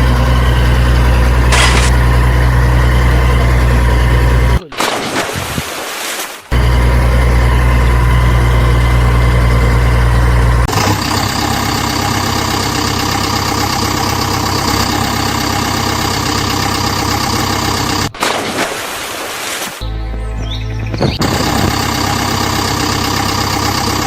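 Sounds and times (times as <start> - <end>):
lighter-sounding engine running: 0.0 - 4.6, 6.5 - 18.2, 19.8 - 24.0
engine idling: 0.0 - 4.7, 6.5 - 18.2, 21.1 - 24.0.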